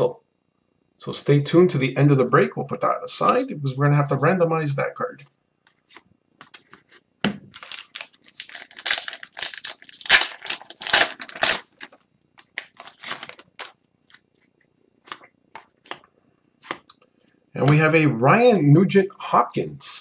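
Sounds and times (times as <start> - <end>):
cards being handled: 5.6 - 16.0
foil wrapper crinkling and tearing: 7.5 - 14.4.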